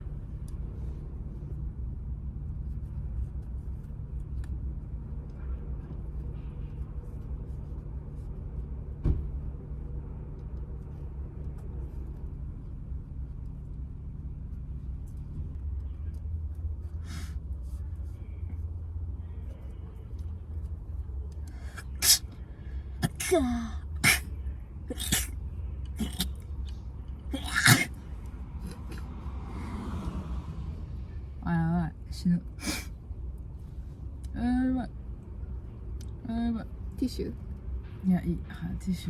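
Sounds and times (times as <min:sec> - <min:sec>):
breathy hiss: 0:21.5 - 0:22.2.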